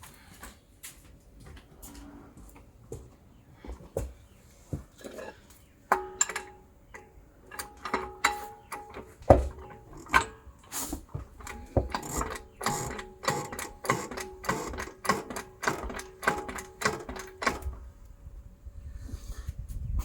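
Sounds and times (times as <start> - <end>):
hand tools clanking on metal: 5.0 - 17.8.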